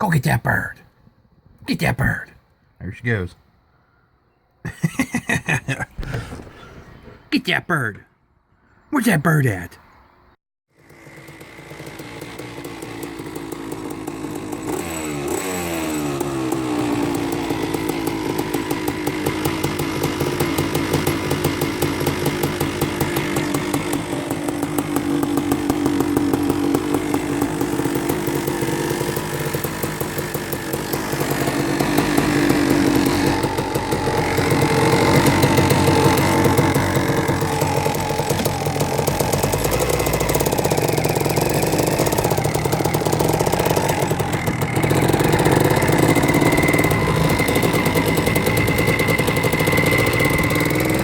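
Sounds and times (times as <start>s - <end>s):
small gasoline engine revving: 10.7s - 51.0s.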